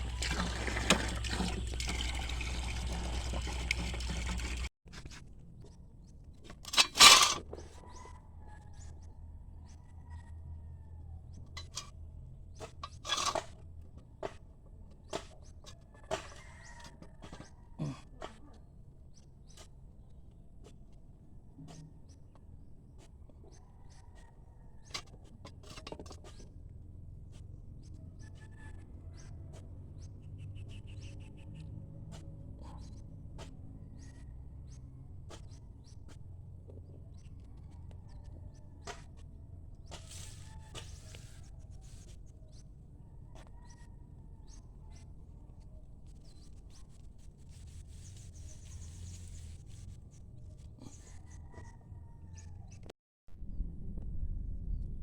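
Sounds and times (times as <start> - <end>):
water sputtering and splashing: 0.0 - 4.7.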